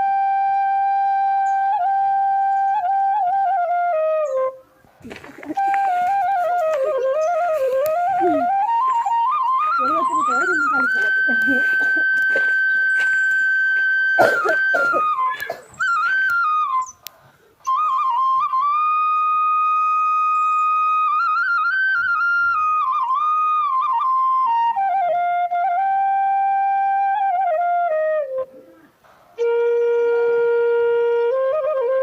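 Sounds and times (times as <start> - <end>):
solo flute melody: 0.0 - 32.0.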